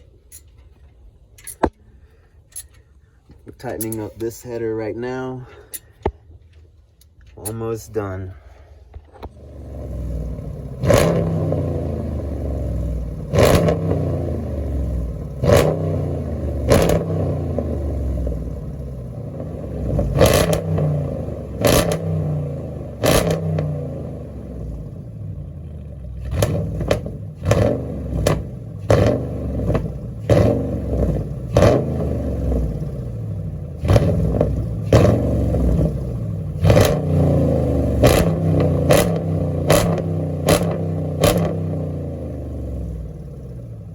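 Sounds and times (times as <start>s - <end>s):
engine droning: 0.0s - 43.9s.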